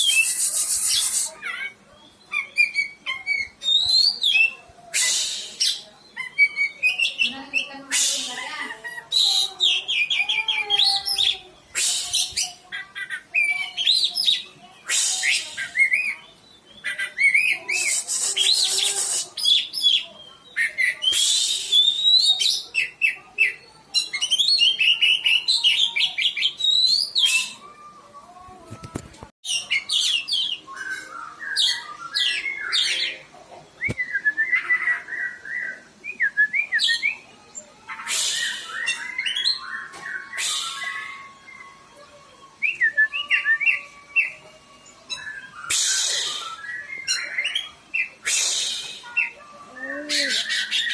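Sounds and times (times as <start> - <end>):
bird singing whistled phrases: 0.0 - 1.4, 20.6 - 22.9, 24.2 - 27.6, 38.1 - 41.8, 42.6 - 44.4, 45.1 - 50.9.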